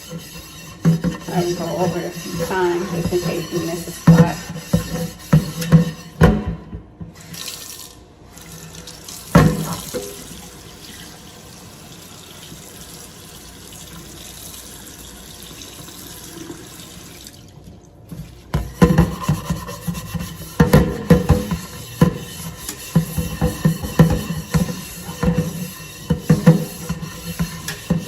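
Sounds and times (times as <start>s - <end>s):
tap water running: 0.0s - 28.0s.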